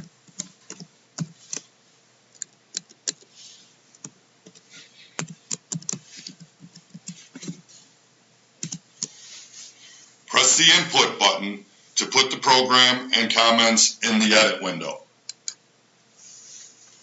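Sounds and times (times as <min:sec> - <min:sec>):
keyboard keys clicking: 0:00.0 - 0:01.6, 0:02.4 - 0:03.3, 0:05.2 - 0:07.5, 0:08.6 - 0:09.1.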